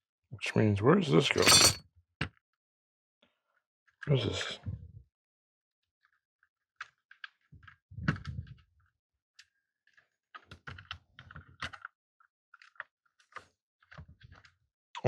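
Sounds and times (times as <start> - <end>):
small parts clicking and knocking: 1.4 - 1.8.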